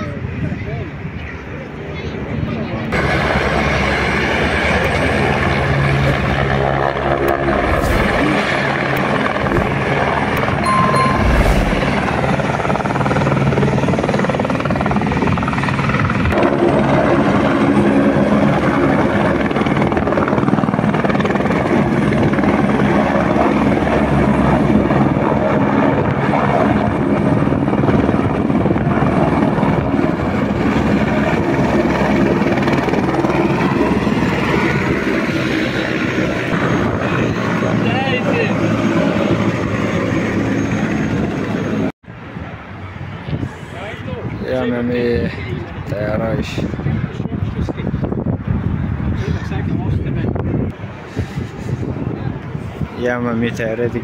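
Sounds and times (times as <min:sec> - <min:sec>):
helicopter rotor and engine: 0:00.0 - 0:54.0.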